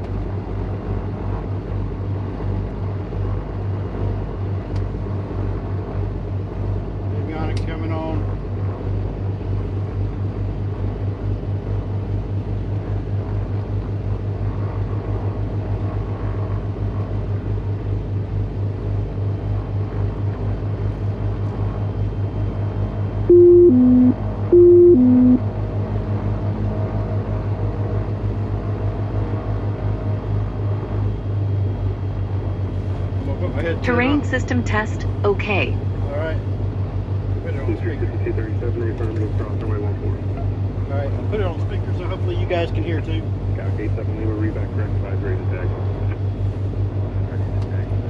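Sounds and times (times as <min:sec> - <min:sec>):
two-note electronic tone: 0:23.3 - 0:25.4.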